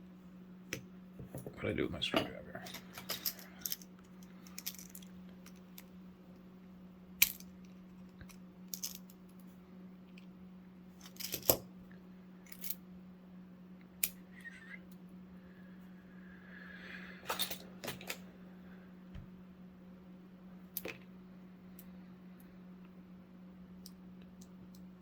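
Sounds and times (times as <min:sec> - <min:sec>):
low hum: 0:00.0 - 0:25.0.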